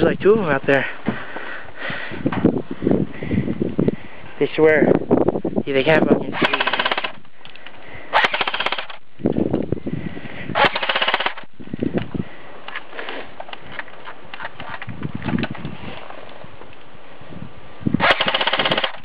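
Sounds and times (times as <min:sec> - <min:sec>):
airsoft gun full-auto bursts: 0:06.3 - 0:07.2, 0:08.1 - 0:09.0, 0:10.6 - 0:11.5, 0:18.0 - 0:19.0.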